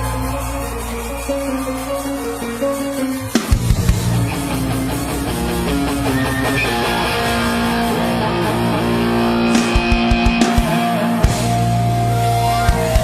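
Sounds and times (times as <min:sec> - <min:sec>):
bass notes: 0:00.0 - 0:13.0
guitar: 0:00.0 - 0:13.0
drum hits: 0:09.6 - 0:10.9.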